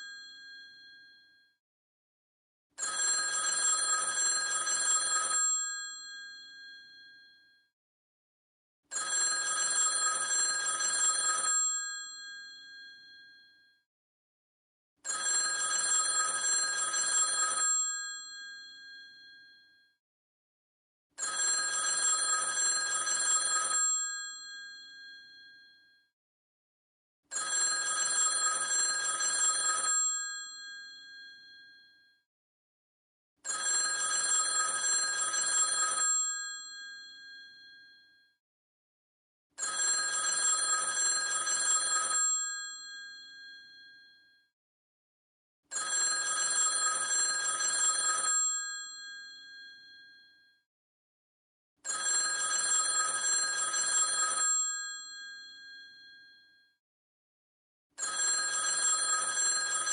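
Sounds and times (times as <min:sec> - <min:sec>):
telephone bell ringing: 0:02.8 - 0:07.6, 0:08.9 - 0:13.6, 0:15.0 - 0:19.8, 0:21.2 - 0:26.0, 0:27.3 - 0:32.0, 0:33.4 - 0:38.2, 0:39.6 - 0:44.3, 0:45.7 - 0:50.4, 0:51.8 - 0:56.5, 0:58.0 - 0:59.9.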